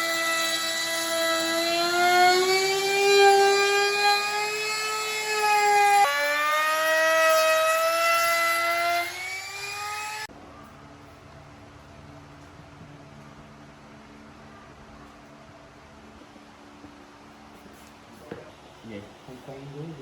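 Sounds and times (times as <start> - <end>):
power tool motor whine: 0.0 - 10.3.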